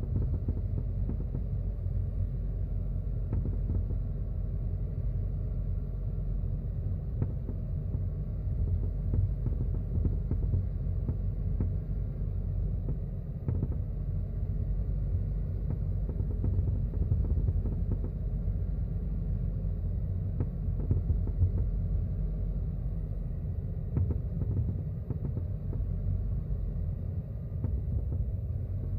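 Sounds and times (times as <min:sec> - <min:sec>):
knocks and clunks from car: 0:00.0 - 0:01.7, 0:03.2 - 0:04.1, 0:07.2 - 0:08.1, 0:08.8 - 0:11.9, 0:12.8 - 0:14.1, 0:15.6 - 0:18.3, 0:20.4 - 0:21.8, 0:23.9 - 0:26.0, 0:27.6 - 0:28.9
road rumble inside car: 0:00.0 - 0:28.9.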